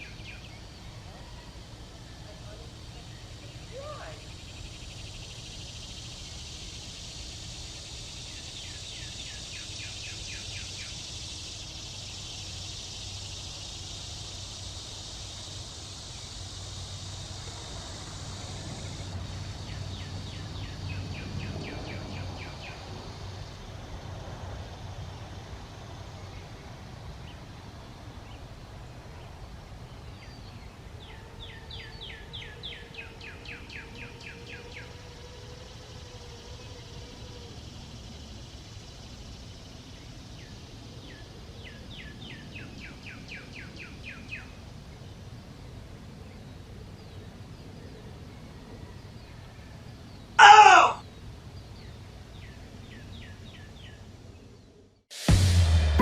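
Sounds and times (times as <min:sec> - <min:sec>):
songbird chirping: 0:00.0 - 0:22.9
high insect drone: 0:00.0 - 0:54.0.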